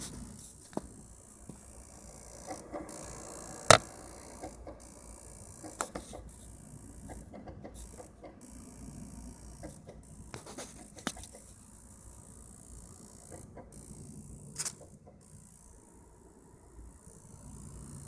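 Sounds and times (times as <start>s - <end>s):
console rattling buzz: 0.0s - 7.4s
faint steady hum: 0.0s - 18.0s
scattered clicks: 5.6s - 6.3s, 9.6s - 11.5s.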